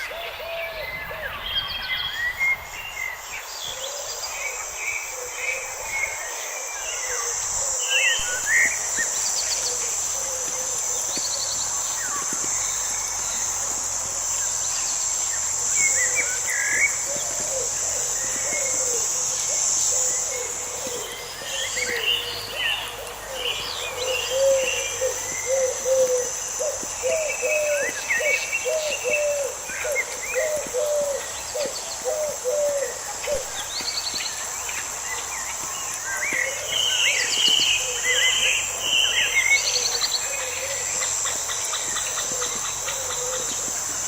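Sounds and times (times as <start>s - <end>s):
high-pitched insect buzz: 3.1s - 44.0s
birds chirping and trilling: 14.2s - 44.0s.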